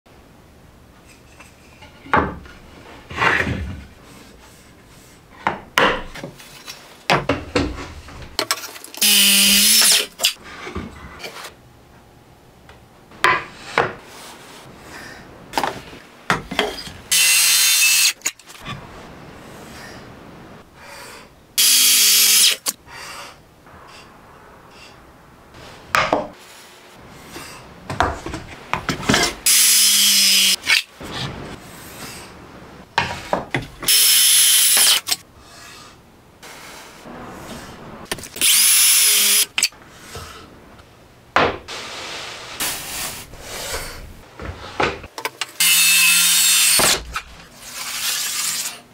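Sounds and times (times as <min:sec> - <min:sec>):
circular saw cutting wood: 0:09.0 - 0:10.4, 0:17.1 - 0:18.3, 0:21.6 - 0:22.7, 0:29.4 - 0:30.8, 0:38.2 - 0:39.7, 0:45.6 - 0:47.0.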